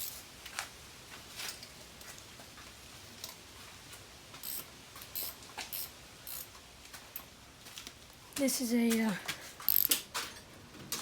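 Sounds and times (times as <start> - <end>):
hand tool clicking: 4.4 - 6.5, 9.7 - 10.0.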